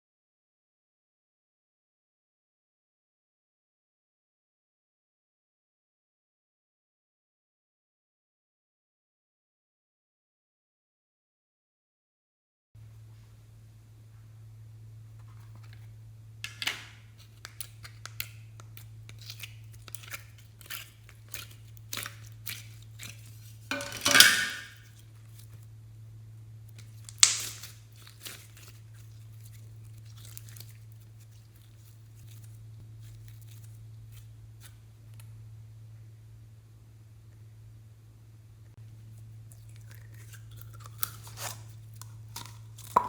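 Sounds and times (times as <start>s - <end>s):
slime crackling and popping: 17.2s - 23.7s, 26.7s - 34.8s, 39.6s - 43.0s
slime squelching: 17.2s - 25.6s, 26.7s - 34.8s, 39.1s - 43.0s.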